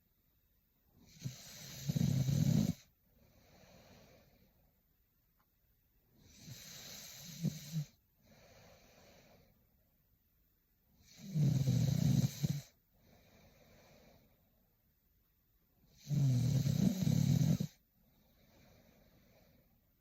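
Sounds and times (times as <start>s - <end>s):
woman snoring: 1.0s - 2.9s, 6.2s - 8.0s, 11.0s - 12.8s, 15.9s - 17.8s
soft breath: 2.8s - 4.8s, 6.7s - 9.8s, 12.6s - 14.8s, 17.6s - 20.0s.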